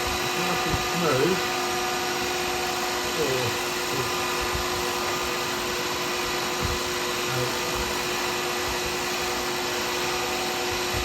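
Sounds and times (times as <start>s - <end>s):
workshop machinery running: 0.0s - 11.0s.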